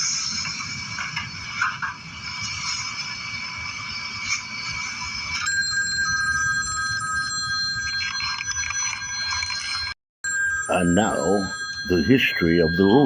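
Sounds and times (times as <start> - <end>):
telephone ringing: 5.4 - 13.0.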